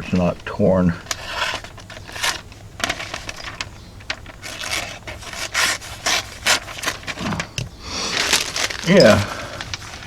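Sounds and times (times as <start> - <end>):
knife slicing through paper: 4.2 - 7.4.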